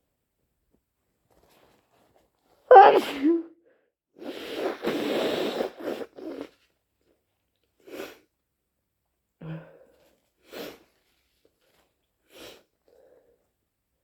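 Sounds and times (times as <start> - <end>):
wet sneeze: 2.7 - 3.5, 4.2 - 6.5
rasping nose blow: 4.2 - 6.5
short sniffs: 4.2 - 6.5, 7.8 - 8.3.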